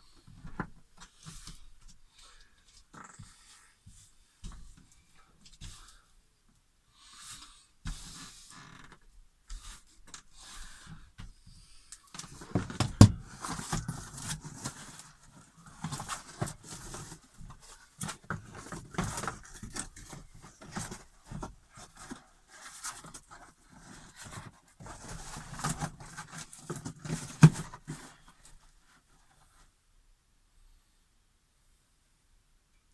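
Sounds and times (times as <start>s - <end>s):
foam insulation rustling and scraping: 12.2s - 29.7s.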